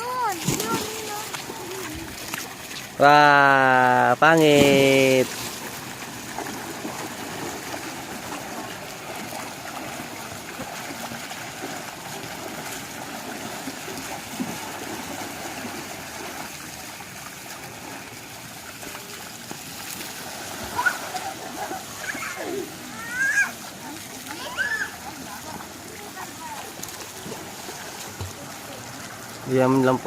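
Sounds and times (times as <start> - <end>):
running water trickling: 0.0 - 30.0.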